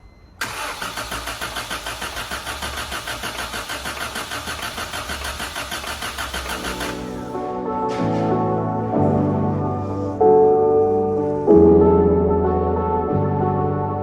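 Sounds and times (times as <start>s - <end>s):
car engine cranking on starter: 0.4s - 7.4s.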